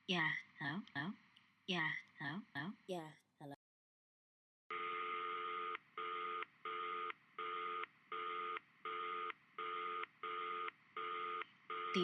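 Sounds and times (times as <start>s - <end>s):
telephone tone beeping: 4.7s - 12.0s.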